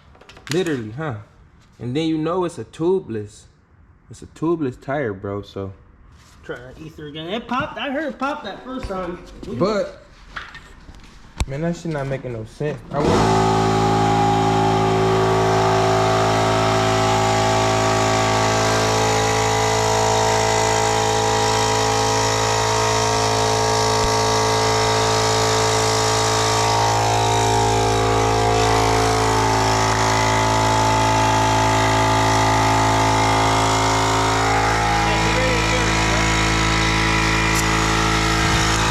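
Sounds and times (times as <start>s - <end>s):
air compressor motor running: 12.9s - 38.9s.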